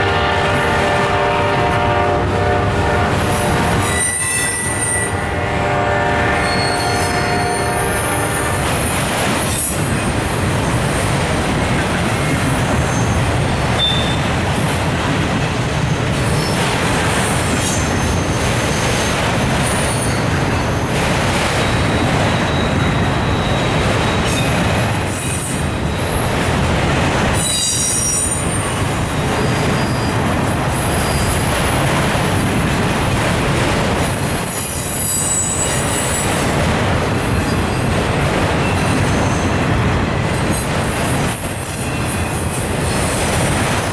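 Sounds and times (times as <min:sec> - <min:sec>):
freight train wheels rumbling on rails: 0:00.0 - 0:43.9
high wheel squeals: 0:03.3 - 0:05.7, 0:06.3 - 0:11.7, 0:12.9 - 0:16.6, 0:27.4 - 0:31.4, 0:34.1 - 0:37.8, 0:40.3 - 0:43.9.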